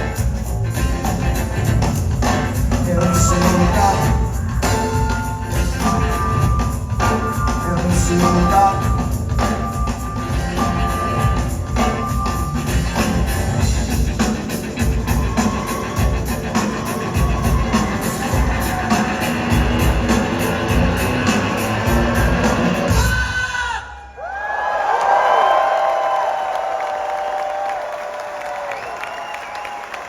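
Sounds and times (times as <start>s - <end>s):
tambourine rhythm: 0.0s - 23.0s
live rock band playing: 0.0s - 23.5s.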